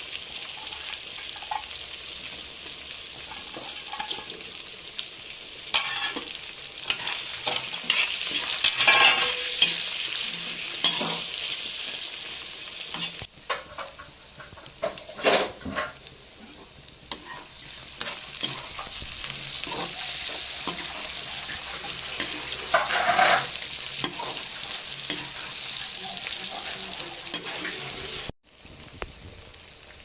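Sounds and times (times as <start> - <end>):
chicken sizzling in a pan: 0.0 - 30.0
spatula scraping a pan: 3.1 - 4.6, 5.7 - 11.9, 12.9 - 28.3.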